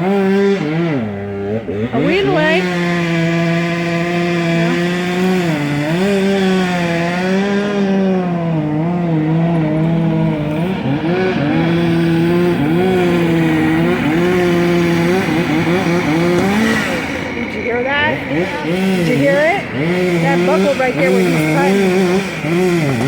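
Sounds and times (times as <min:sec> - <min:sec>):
chainsaw cutting: 0:00.0 - 0:23.0.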